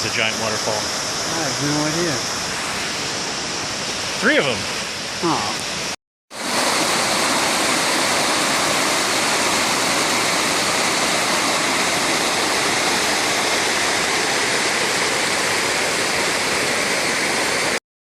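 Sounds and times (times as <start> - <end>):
waterfall pouring: 0.0 - 17.8.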